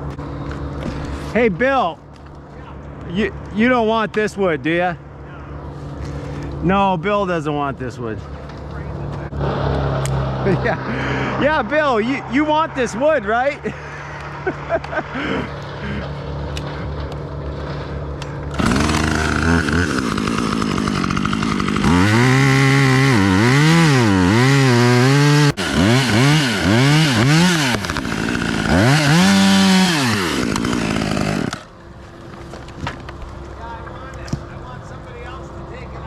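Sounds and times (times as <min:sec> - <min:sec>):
chainsaw engine revving: 0:13.7 - 0:31.7.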